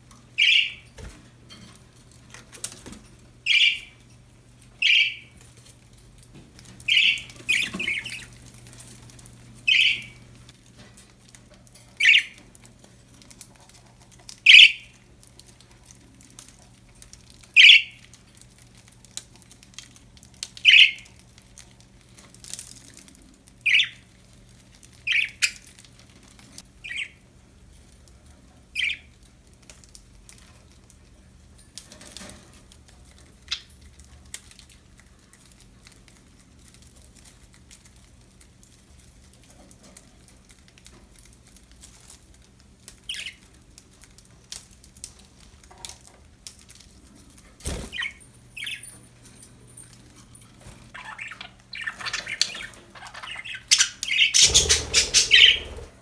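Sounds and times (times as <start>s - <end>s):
budgerigars chirping: 0.4s - 0.8s, 3.5s - 3.9s, 4.8s - 5.3s, 6.9s - 8.3s, 9.7s - 10.2s, 12.0s - 12.4s, 14.5s - 14.9s, 17.6s - 18.0s, 20.7s - 21.0s, 51.0s - 56.0s.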